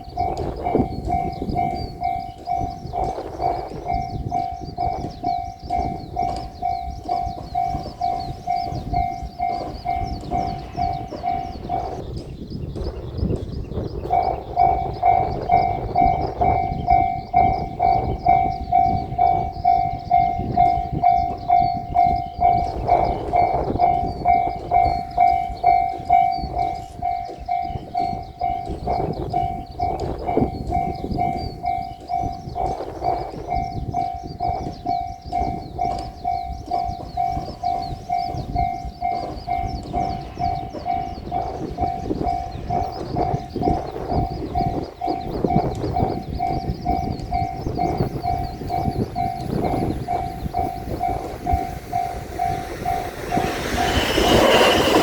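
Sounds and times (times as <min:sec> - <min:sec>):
train passing: 0:00.0 - 0:12.3, 0:48.7 - 0:55.0
level crossing alarm ringing: 0:00.0 - 0:55.0.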